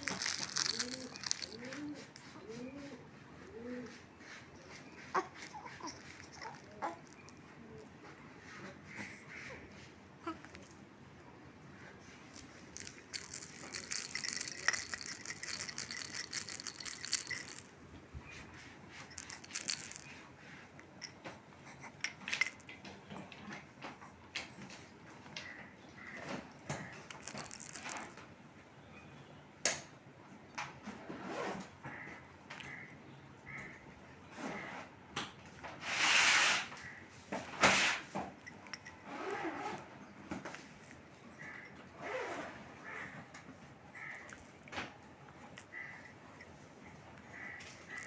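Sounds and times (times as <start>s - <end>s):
rattle shaken: 0.0s - 2.4s, 4.3s - 7.9s, 12.2s - 17.8s, 18.9s - 21.2s, 21.8s - 22.8s, 26.8s - 28.2s, 38.0s - 39.1s, 40.4s - 41.8s, 44.0s - 44.6s, 45.4s - 46.6s, 47.2s - 48.0s.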